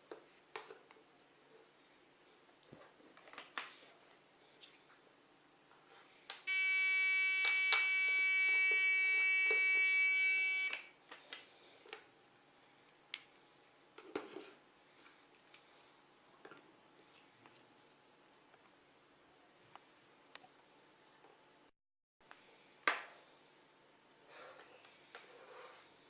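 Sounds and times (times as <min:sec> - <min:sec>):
electronic buzzer: 0:06.5 - 0:10.9.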